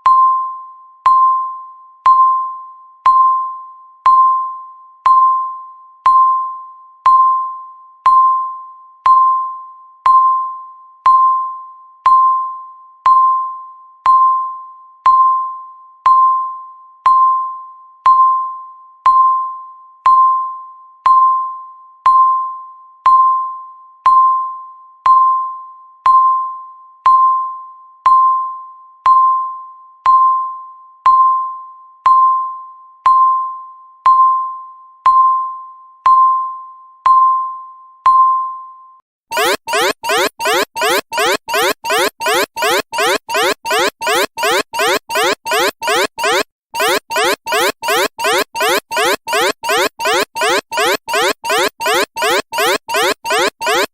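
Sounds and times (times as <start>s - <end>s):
bright pinging timer tick: 39.3s - 53.9s.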